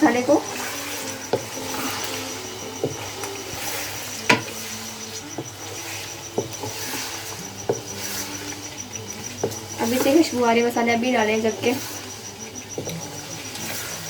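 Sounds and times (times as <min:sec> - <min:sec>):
frying sizzle: 0:00.0 - 0:14.0
utensil knocking against pan: 0:04.3 - 0:04.6.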